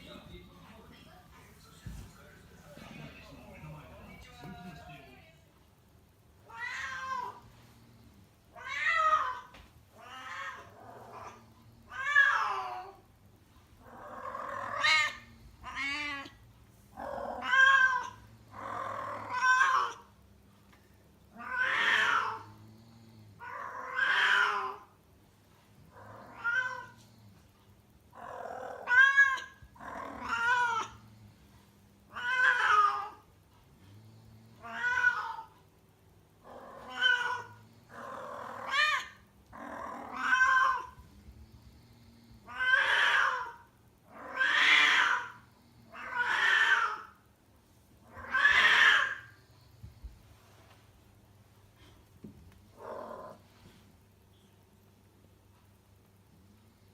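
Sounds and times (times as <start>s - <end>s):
cat yowling: 6.5s - 7.4s, 8.6s - 13.0s, 14.2s - 16.4s, 17.3s - 20.1s, 21.4s - 22.4s, 23.4s - 24.8s, 26.0s - 27.0s, 28.2s - 31.0s, 32.1s - 33.2s, 34.6s - 35.5s, 36.6s - 37.6s, 38.4s - 41.0s, 42.5s - 45.4s, 46.0s - 47.1s, 48.1s - 49.3s.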